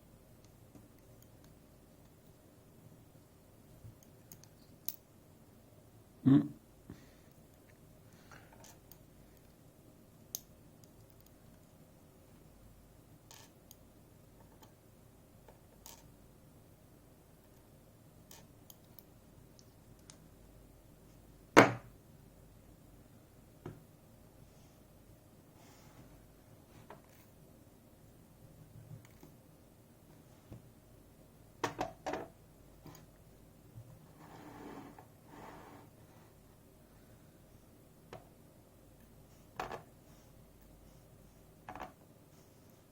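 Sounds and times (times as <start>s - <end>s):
soft rubbing noise: 34.1s - 36.4s.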